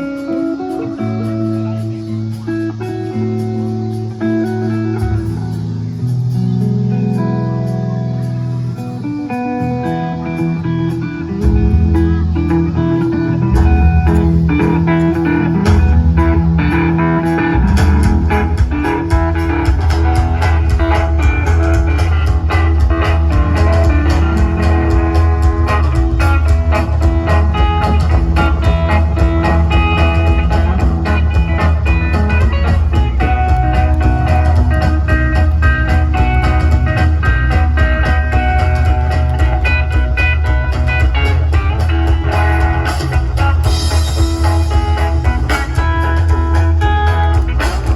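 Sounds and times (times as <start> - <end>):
heavy bass: 0.0 - 47.9
live guitar band: 0.0 - 47.9.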